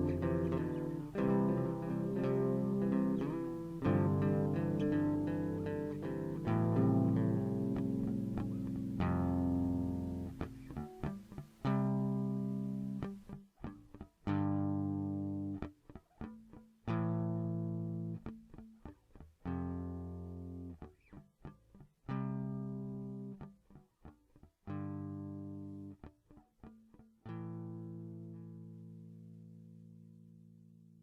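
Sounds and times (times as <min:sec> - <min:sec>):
guitar chords ringing: 0:00.0 - 0:18.6.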